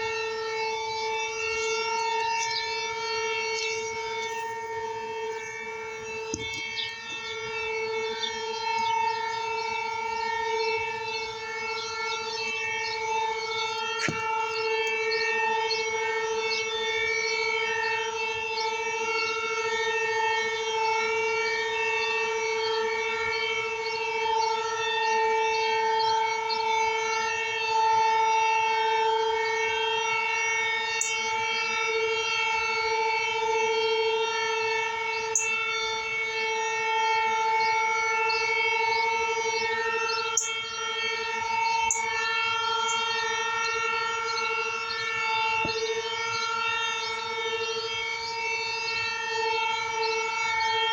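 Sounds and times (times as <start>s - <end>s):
warning siren steady tone: 0.0s - 50.9s.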